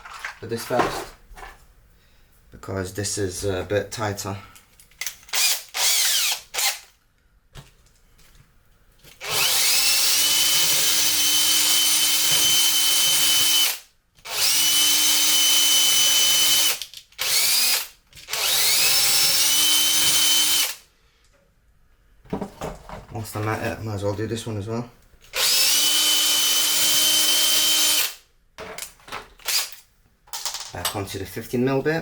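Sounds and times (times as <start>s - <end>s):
power drill whine: 5.4s - 6.9s, 9.2s - 20.8s, 25.4s - 28.2s.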